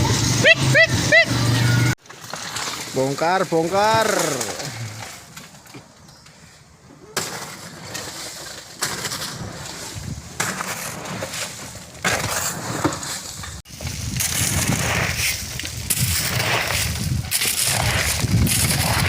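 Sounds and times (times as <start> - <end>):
sand pouring with gritty crunch: 2.0 - 5.4, 7.2 - 19.0.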